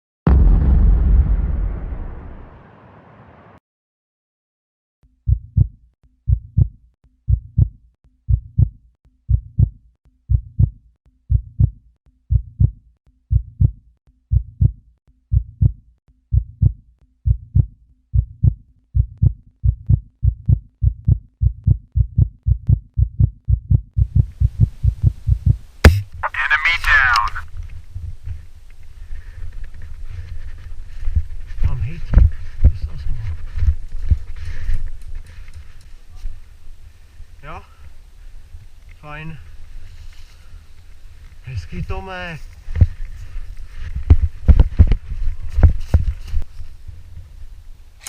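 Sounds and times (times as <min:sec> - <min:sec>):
heartbeat thumps: 0:05.3 - 0:26.2, 0:27.7 - 0:28.4, 0:29.2 - 0:35.4, 0:42.7 - 0:46.4.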